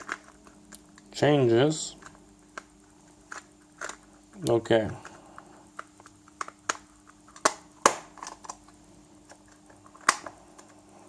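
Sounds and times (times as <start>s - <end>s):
plastic parts clicking and tapping: 2.0s - 10.8s.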